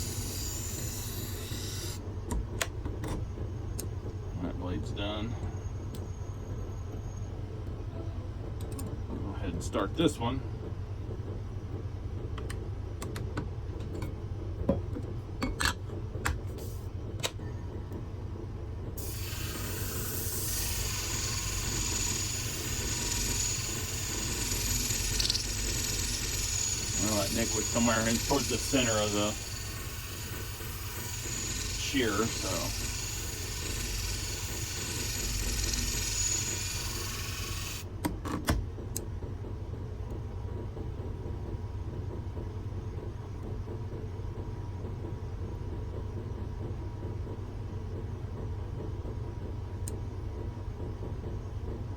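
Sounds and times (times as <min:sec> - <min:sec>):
sharpening machine humming: 0:00.0 - 0:02.0, 0:19.0 - 0:37.9
blade grinding hiss: 0:19.0 - 0:37.8.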